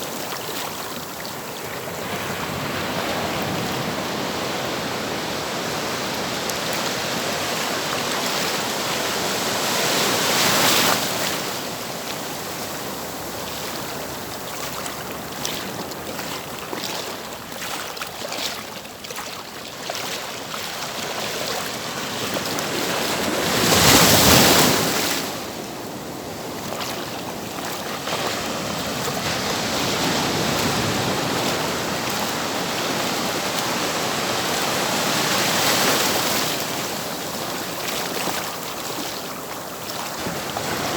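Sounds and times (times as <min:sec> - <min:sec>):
waves washing in: 0:00.0 - 0:40.9
wave breaking: 0:21.4 - 0:25.6.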